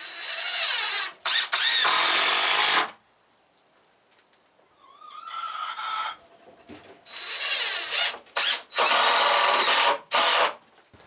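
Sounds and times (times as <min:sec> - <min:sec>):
power drill driving screws into wood: 0:00.0 - 0:03.0, 0:07.1 - 0:10.6.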